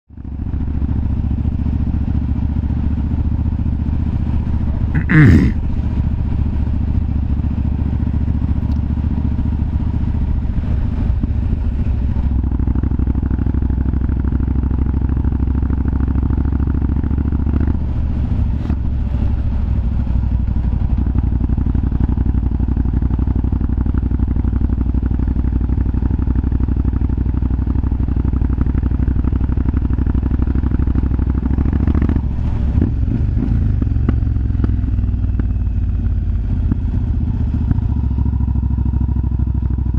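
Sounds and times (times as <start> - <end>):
motorcycle engine running: 0.1 - 39.9.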